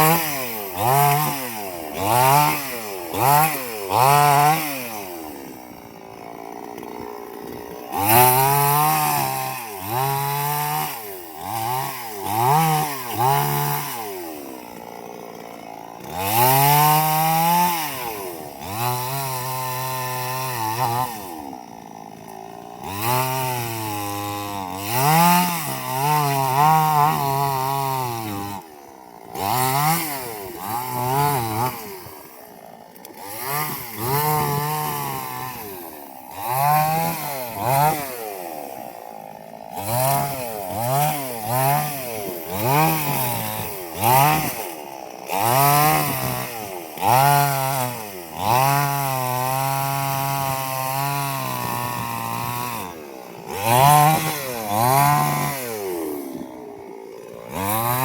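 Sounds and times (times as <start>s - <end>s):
chainsaw engine revving: 0.0s - 58.0s.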